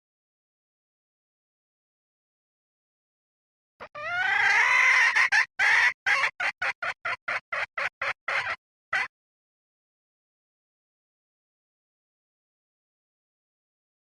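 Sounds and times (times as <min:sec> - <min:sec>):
hen lure call: 0:03.8 - 0:09.1
rapid hen clucks: 0:03.8 - 0:09.1.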